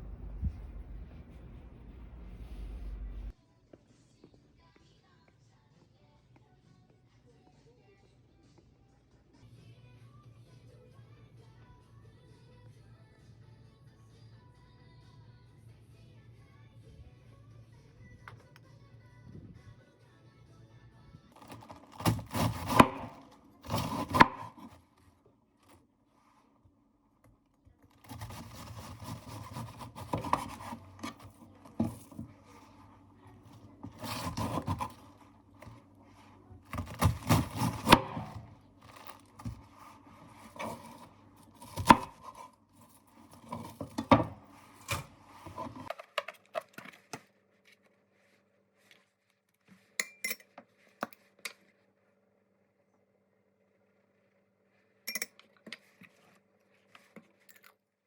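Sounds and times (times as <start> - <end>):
objects knocking and scraping: 28.1 - 35.8.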